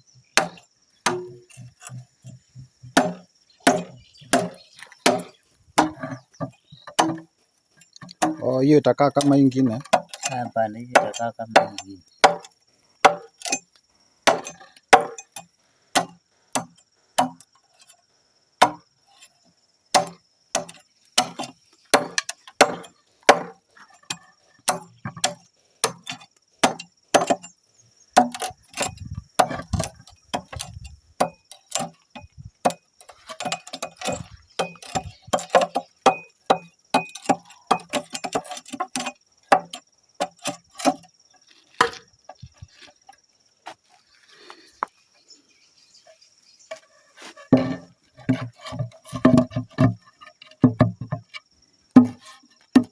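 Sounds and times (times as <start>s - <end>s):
tool striking wood: 0.4s - 7.2s, 8.0s - 8.5s, 9.2s - 13.6s, 14.3s - 15.2s, 16.0s - 17.4s, 19.9s - 27.5s, 28.2s - 41.0s, 47.5s - 51.4s, 52.0s - 52.9s.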